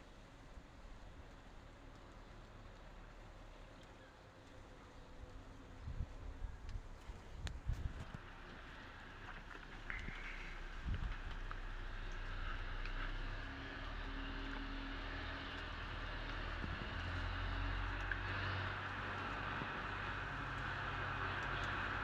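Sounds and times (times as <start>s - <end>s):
low rumble: 5.4s - 22.0s.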